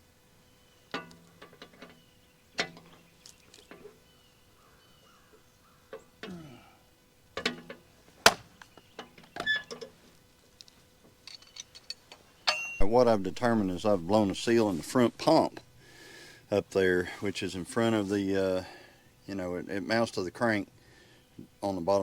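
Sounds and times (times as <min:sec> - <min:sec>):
metal tools clanking: 0:11.2 - 0:14.8.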